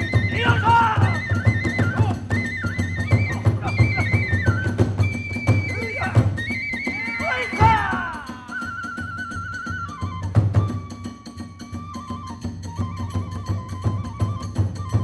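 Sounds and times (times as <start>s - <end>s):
bamboo flute trilling melody: 0.0s - 15.0s
rapid drum strokes: 3.2s - 9.1s.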